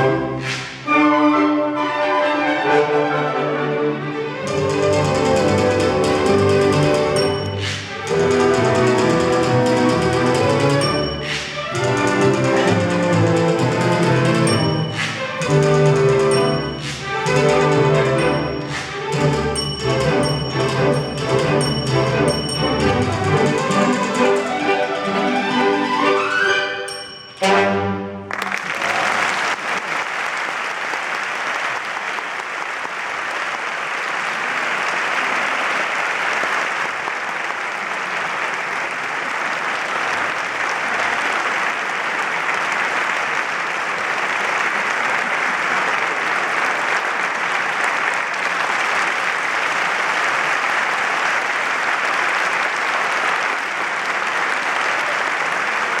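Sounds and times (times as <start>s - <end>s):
audience applauding: 28.2s - 56.0s.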